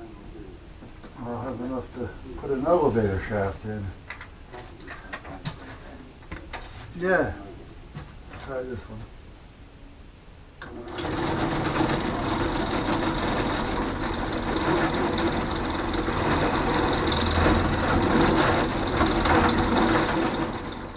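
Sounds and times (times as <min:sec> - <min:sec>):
electric drill boring: 0:10.9 - 0:20.9.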